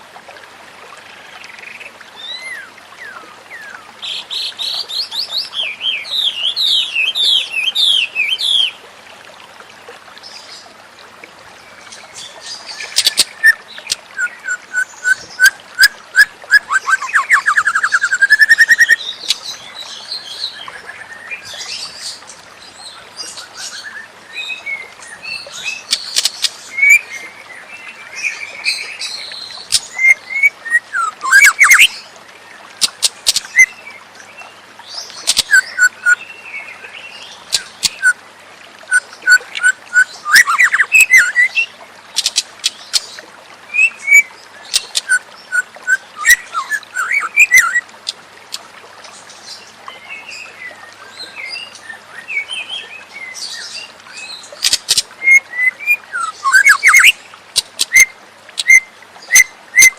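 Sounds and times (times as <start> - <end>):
songbird whistling and clicking: 12.9 - 19.4, 29.7 - 31.9, 32.8 - 33.7, 35.3 - 36.2, 37.5 - 38.1, 38.9 - 43.1, 43.8 - 48.7, 54.6 - 59.9.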